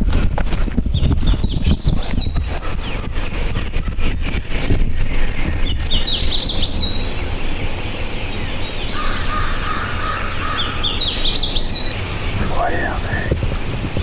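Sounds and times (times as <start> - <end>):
rough low bird call: 0.8 - 14.0
songbird whistled notes: 5.0 - 7.7, 8.3 - 13.3.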